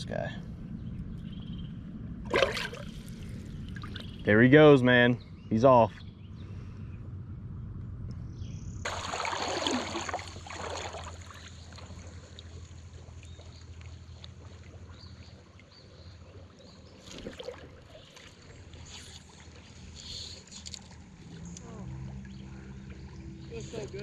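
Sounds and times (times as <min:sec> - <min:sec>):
steady wash of water: 0:02.3 - 0:04.0, 0:08.9 - 0:12.6
river water splashing: 0:02.3 - 0:04.2, 0:08.9 - 0:24.0.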